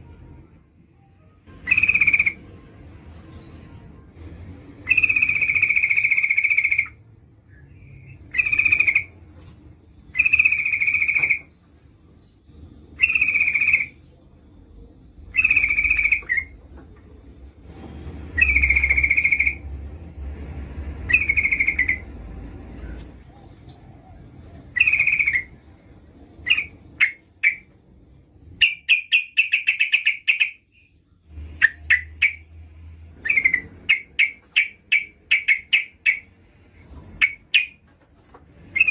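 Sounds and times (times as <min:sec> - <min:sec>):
bird calling: 0:21.1 - 0:22.1, 0:22.9 - 0:25.6.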